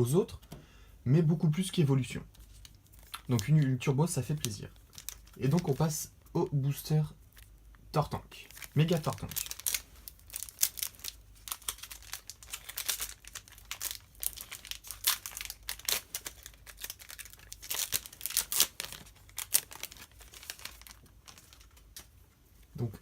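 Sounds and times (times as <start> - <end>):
foil wrapper tearing and crinkling: 2.3 - 6.0, 8.4 - 22.1.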